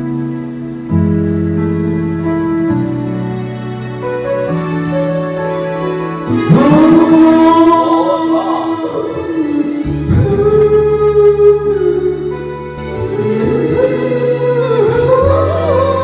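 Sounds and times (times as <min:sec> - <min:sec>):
karaoke backing track chords: 0:00.0 - 0:16.0
person singing a ballad: 0:04.6 - 0:16.0.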